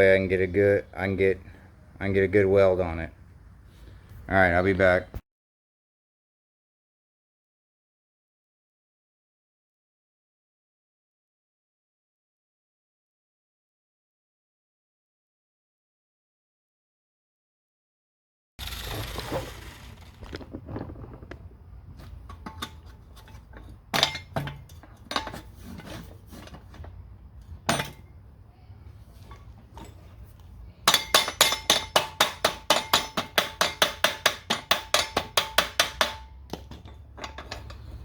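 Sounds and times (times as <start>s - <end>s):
metal pipe clinks and knocks: 22.0s - 28.2s, 30.8s - 38.0s.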